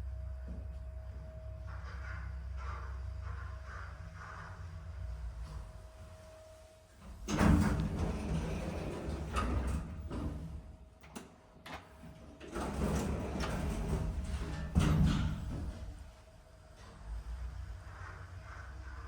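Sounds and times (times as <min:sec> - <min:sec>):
elevator doors sliding with rattle: 0:01.0 - 0:19.0
elevator doors banging shut: 0:07.1 - 0:10.7, 0:12.4 - 0:16.1.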